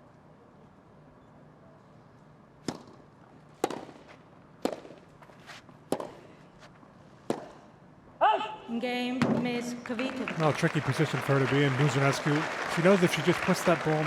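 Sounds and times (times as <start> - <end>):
racket hitting tennis ball: 2.6 - 3.0, 3.6 - 6.3, 7.2 - 7.7.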